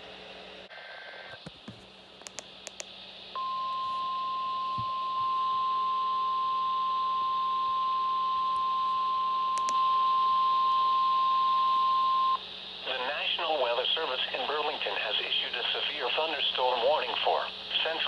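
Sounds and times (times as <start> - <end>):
quick clicks: 2.2 - 2.9.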